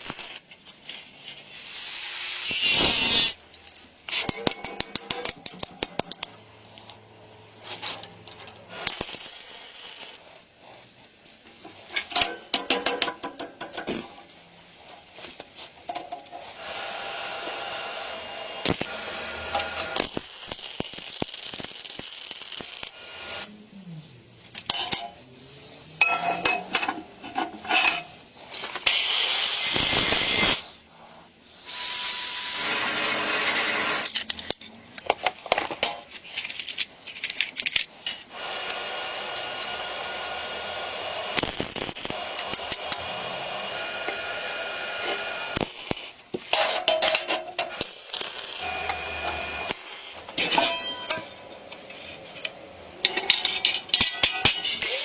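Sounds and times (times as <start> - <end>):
tool scraping metal: 24.7 - 30.7, 45.9 - 52.2
metal clinks and knocks: 26.0 - 28.3, 50.4 - 51.4.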